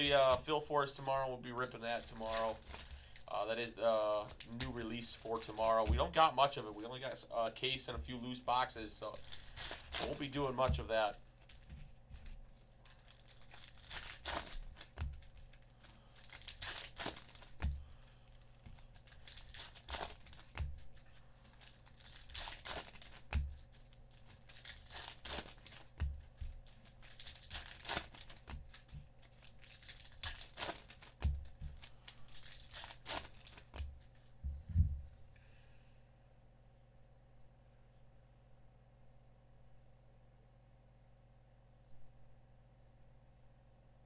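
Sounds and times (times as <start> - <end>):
plastic wrapping tearing and crinkling: 0.0 - 6.3, 8.5 - 34.2.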